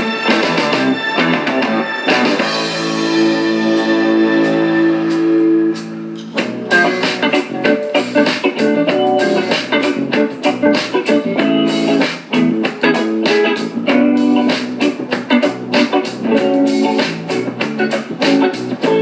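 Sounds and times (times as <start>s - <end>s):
guitar music with steady beat: 0.0s - 19.0s.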